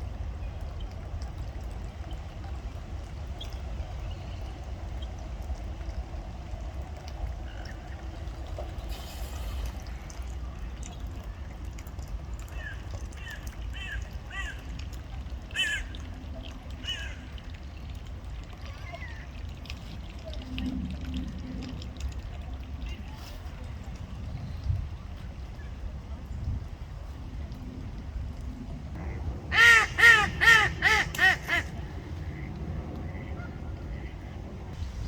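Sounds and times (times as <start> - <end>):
low background rumble: 0.0 - 35.0
ducks quacking: 29.0 - 34.4.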